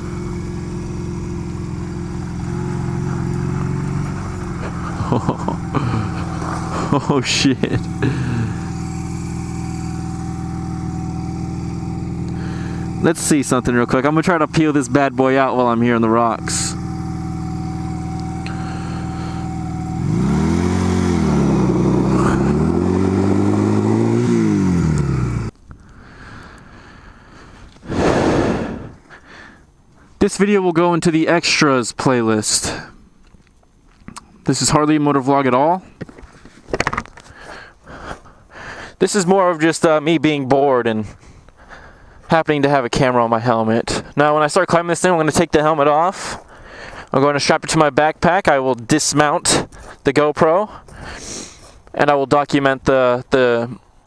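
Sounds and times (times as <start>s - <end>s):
motorcycle engine running: 0.0s - 29.0s.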